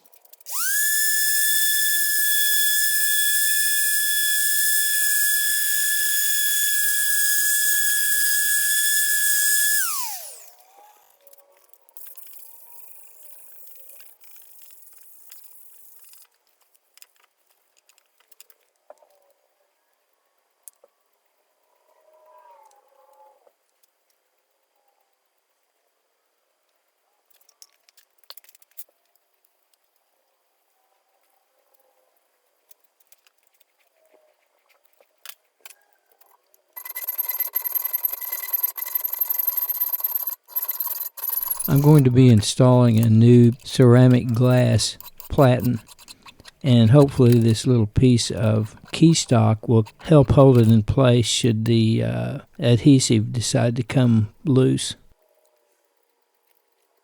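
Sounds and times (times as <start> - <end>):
small power tool whirring: 0.3 - 16.3, 36.2 - 47.6, 48.2 - 50.8
tools clicking and tapping: 36.8 - 50.8.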